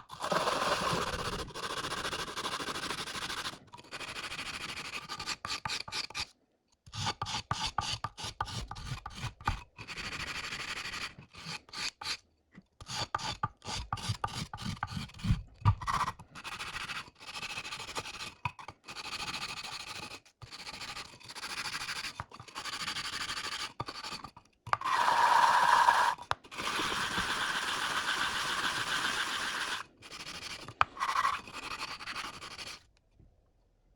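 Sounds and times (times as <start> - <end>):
hand sanding scrubbing strokes: 24.9 - 32.8.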